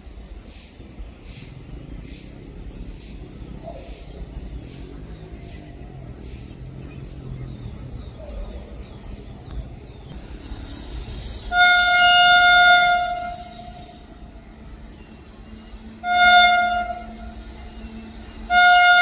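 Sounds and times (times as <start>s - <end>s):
locomotive horn blast: 11.5s - 14.2s, 16.0s - 17.5s, 18.4s - 19.0s.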